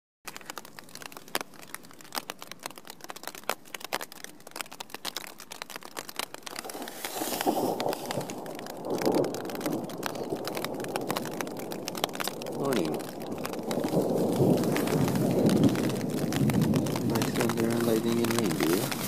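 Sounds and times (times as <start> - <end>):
raindrops on tent fabric: 0.2 - 19.0.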